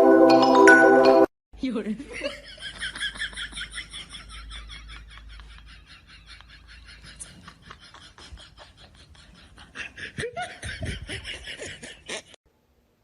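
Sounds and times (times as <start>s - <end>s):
people laughing: 2.0s - 12.4s.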